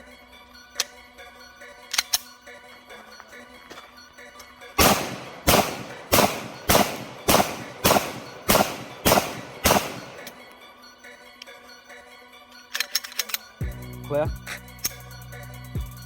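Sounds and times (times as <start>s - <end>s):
pistol shots: 4.8s - 10.6s.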